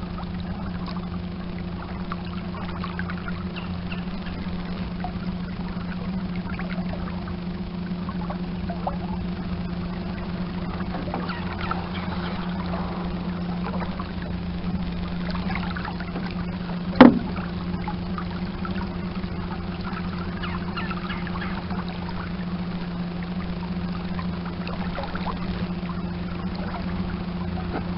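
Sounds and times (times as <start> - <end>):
water lapping along hull: 0.0 - 27.9
loud knock: 17.0 - 17.4.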